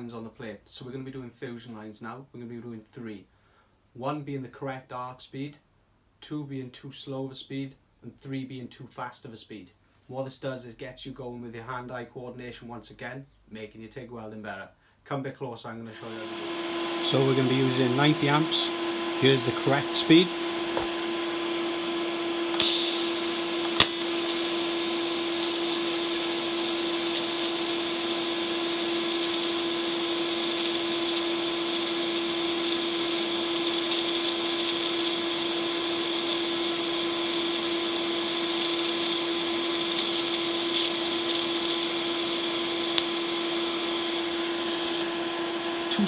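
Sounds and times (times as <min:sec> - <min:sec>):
welding arc buzzing hiss: 0:16.0 - 0:46.0.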